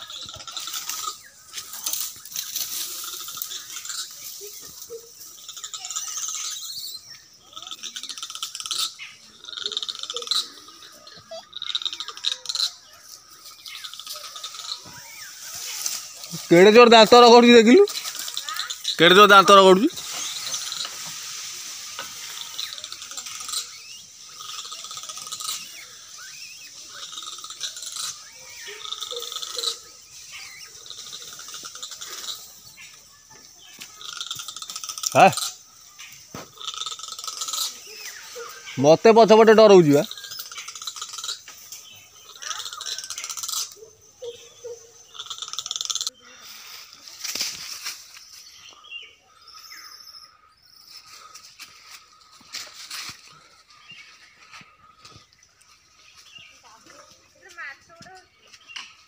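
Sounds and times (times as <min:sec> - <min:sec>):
high-pitched animal calls: 0:00.0 - 0:47.1
birds chirping: 0:00.0 - 0:59.0.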